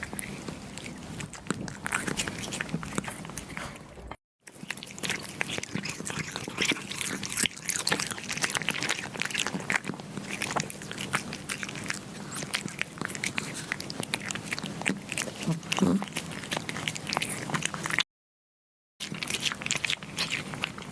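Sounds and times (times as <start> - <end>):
kittens chewing and biting: 0.0 - 4.2.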